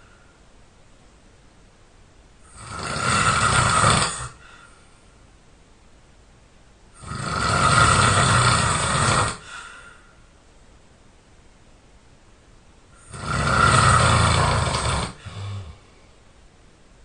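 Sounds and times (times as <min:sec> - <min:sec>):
person snoring loudly: 0:02.4 - 0:04.5, 0:07.0 - 0:09.7, 0:13.0 - 0:15.9.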